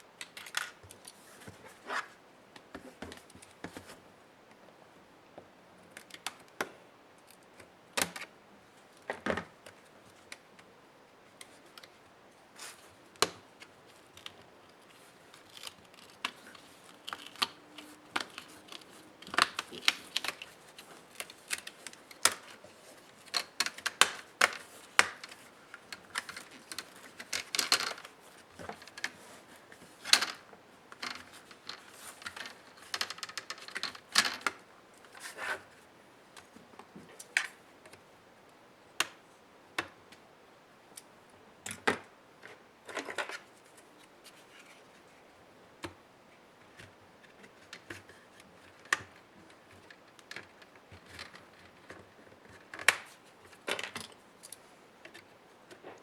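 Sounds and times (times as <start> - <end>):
laptop parts and tools clattering: 15.3 - 29.2.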